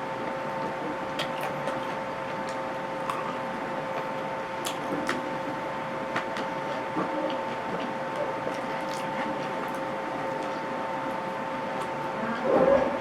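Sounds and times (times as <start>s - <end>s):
two-tone background hum: 0.0s - 13.0s
person chewing: 1.2s - 3.5s.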